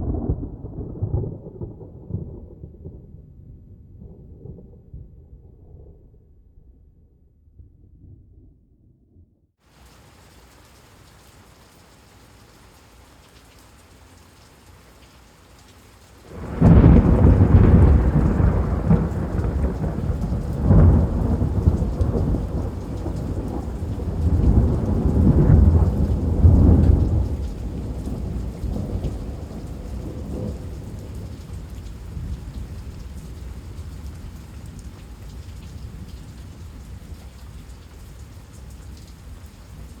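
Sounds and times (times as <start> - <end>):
rain patter: 9.6 - 40.0
thunder rolling: 16.3 - 31.3.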